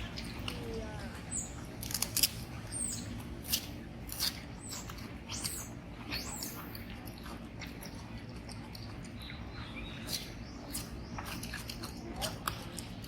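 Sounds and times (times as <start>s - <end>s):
steady background noise: 0.0s - 13.0s
baby monkey squeaking: 2.7s - 6.7s.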